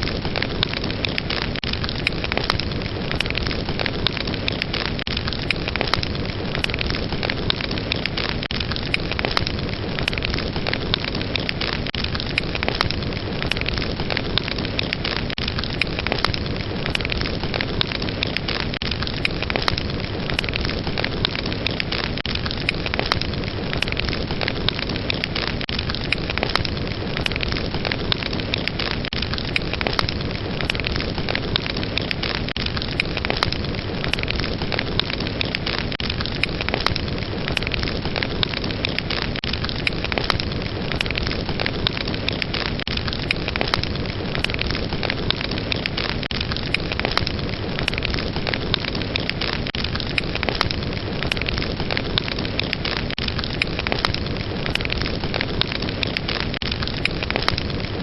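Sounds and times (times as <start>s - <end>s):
fire crackling and popping: 0.0s - 58.0s.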